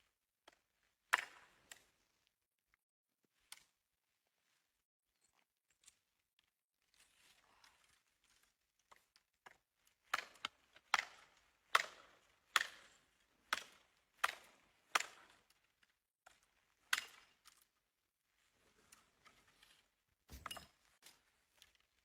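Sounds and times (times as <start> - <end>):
wood chopping strikes: 20.3 - 20.7.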